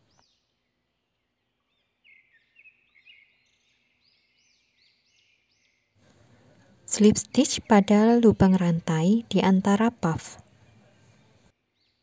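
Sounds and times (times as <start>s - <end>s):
faint high bird chirps: 0.0s - 6.0s.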